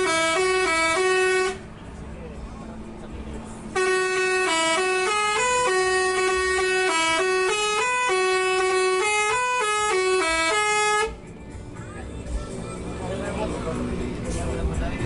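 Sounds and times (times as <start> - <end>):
musical bus horn playing tune: 0.0 - 1.7, 3.7 - 11.3.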